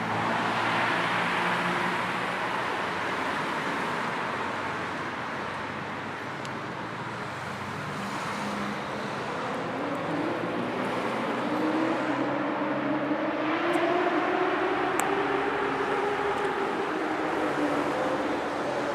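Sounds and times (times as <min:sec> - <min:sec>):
road traffic rush: 0:00.0 - 0:18.9
vehicle engine accelerating: 0:08.2 - 0:18.9.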